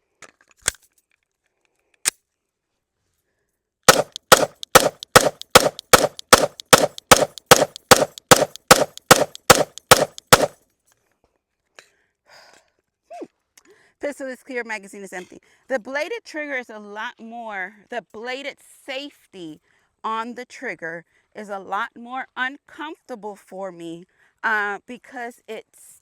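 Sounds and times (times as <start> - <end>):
pistol shots: 3.9 - 10.5
small clicks: 3.9 - 10.5.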